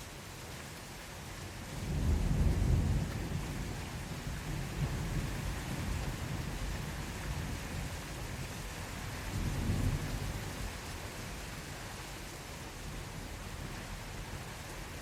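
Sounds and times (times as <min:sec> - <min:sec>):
steady rain falling: 0:00.0 - 0:15.0
low thunder rumbling: 0:01.8 - 0:08.4, 0:09.2 - 0:10.7.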